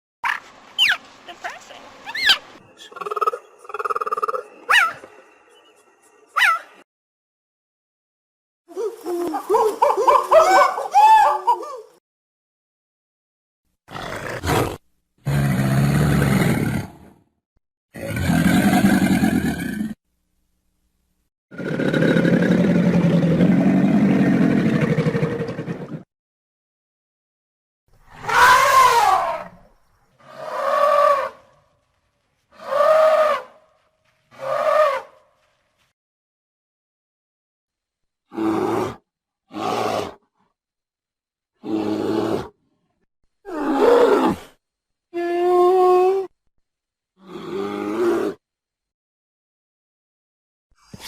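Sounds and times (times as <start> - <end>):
large animal growling: 18.0 - 20.0, 21.5 - 26.0, 47.2 - 48.4.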